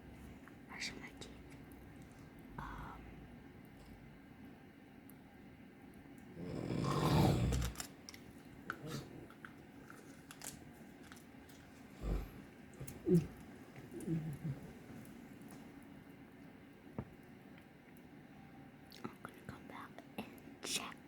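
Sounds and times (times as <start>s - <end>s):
man snoring: 6.4s - 7.8s.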